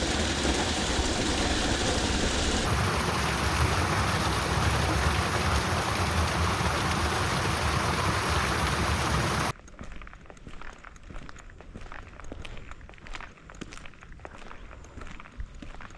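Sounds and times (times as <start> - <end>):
water rushing in a channel: 0.0 - 9.5.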